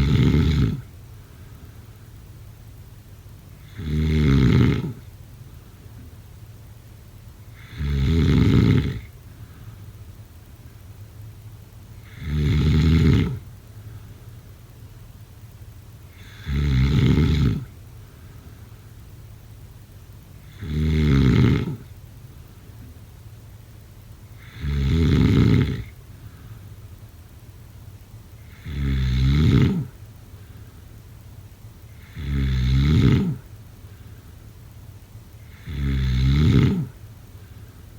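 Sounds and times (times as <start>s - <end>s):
person snoring: 0.0s - 0.9s, 3.6s - 5.0s, 7.6s - 9.1s, 12.0s - 13.4s, 16.1s - 17.7s, 20.4s - 21.8s, 24.4s - 25.9s, 28.4s - 30.0s, 31.9s - 33.4s, 35.4s - 37.0s
faint low hum: 0.0s - 37.9s.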